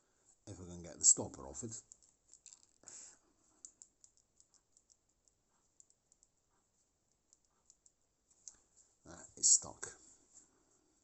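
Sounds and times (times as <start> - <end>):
faint small clicks: 1.8 - 2.9, 3.6 - 6.3, 7.2 - 8.6.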